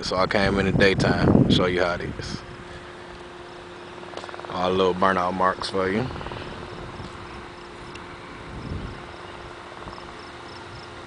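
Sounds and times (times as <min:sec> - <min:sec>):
faint hum: 0:00.0 - 0:11.0
outdoor background noise: 0:00.0 - 0:11.0
cricket chirping: 0:06.3 - 0:07.9, 0:08.5 - 0:11.0.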